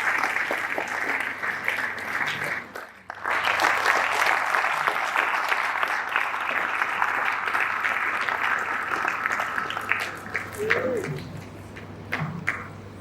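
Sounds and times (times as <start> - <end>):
audience applauding: 0.0 - 11.8.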